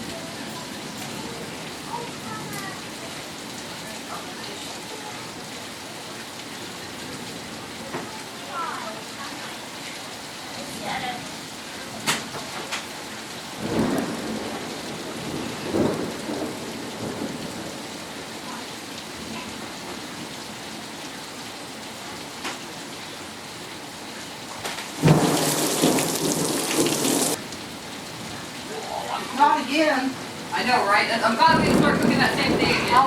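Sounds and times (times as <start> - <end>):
steady rain: 0.0 - 33.0
loud thunderclap: 13.6 - 17.8, 25.0 - 27.4, 31.1 - 33.0
thunder rumbling: 13.6 - 18.4, 25.0 - 28.5, 29.6 - 33.0.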